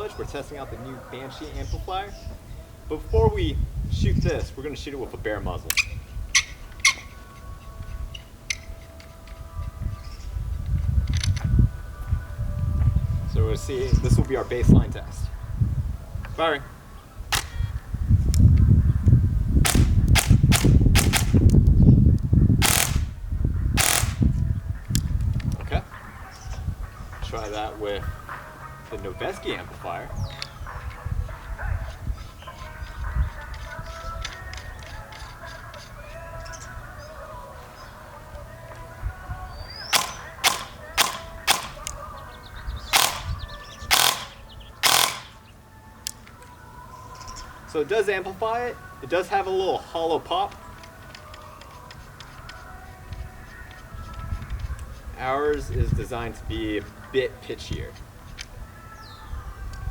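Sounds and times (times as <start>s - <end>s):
airsoft gun pops: 17.3s - 17.6s, 19.6s - 21.8s, 22.6s - 23.1s, 23.8s - 24.3s, 39.9s - 42.0s, 42.9s - 43.3s.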